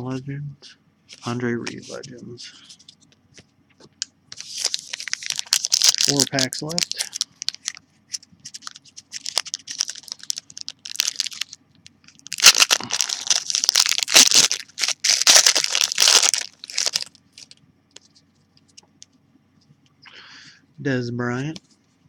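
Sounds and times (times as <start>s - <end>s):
wrapper crinkling: 4.3s - 18.1s
wrapper ripping open: 4.4s - 7.8s, 8.5s - 17.6s.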